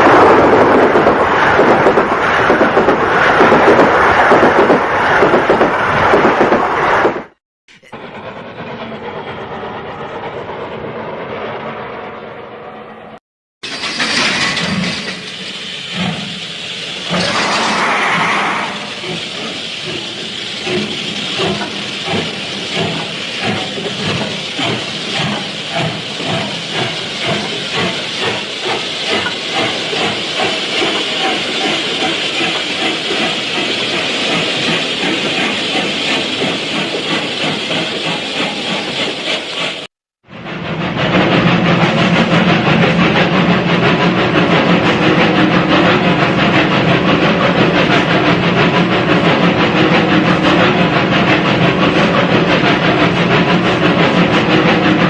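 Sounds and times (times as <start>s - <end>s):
steam locomotive chuffing: 13.6s - 55.0s
steam hiss: 13.7s - 39.9s.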